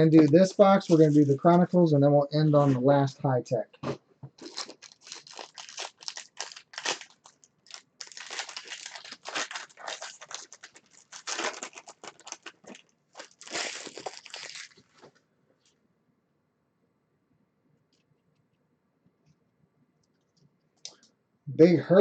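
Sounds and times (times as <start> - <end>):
packaging crinkling and tearing: 4.4 - 15.1.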